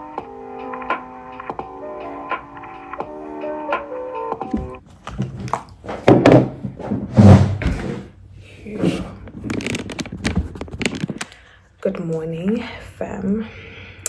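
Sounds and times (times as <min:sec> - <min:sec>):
objects thumping and knocking: 0:04.5 - 0:08.1.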